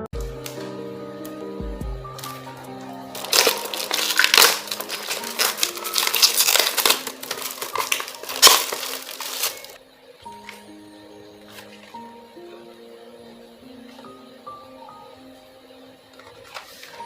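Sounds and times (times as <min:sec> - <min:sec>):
soft background music: 0:00.0 - 0:17.0
crinkling plastic handling noise: 0:02.1 - 0:10.6, 0:16.1 - 0:17.0.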